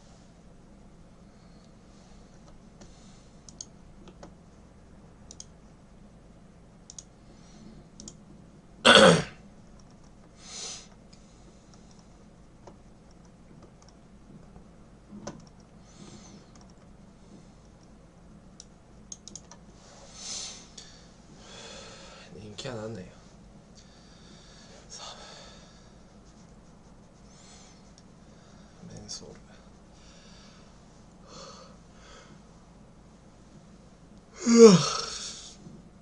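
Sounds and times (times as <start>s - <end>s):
faint clicks: 2.4s - 4.4s, 5.3s - 5.6s, 6.9s - 7.1s, 9.7s - 10.3s, 18.6s - 19.6s
man coughing: 8.9s - 9.4s.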